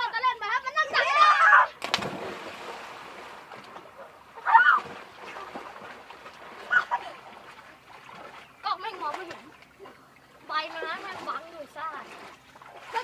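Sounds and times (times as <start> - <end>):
churning water: 0.1 - 13.0
body splashing into water: 1.8 - 3.8, 4.4 - 9.5.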